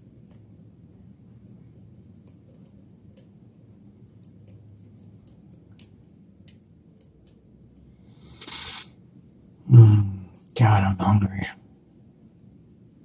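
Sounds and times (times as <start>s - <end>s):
short breathy hiss: 8.0s - 9.0s.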